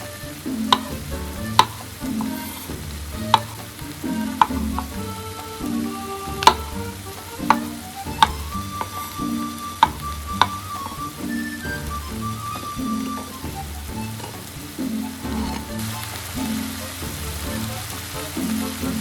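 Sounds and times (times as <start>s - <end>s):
food sizzling in a pan: 0.0s - 19.0s
utensil knocking against pan: 0.5s - 11.3s.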